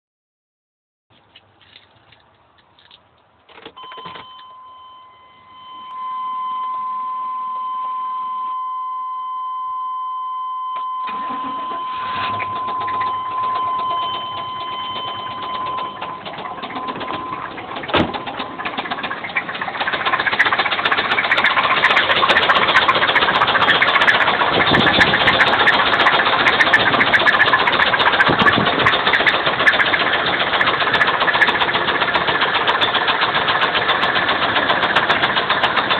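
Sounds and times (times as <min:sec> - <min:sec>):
steady warning tone: 0:03.8 - 0:19.3
engine running with rapid knocking: 0:12.4 - 0:35.9.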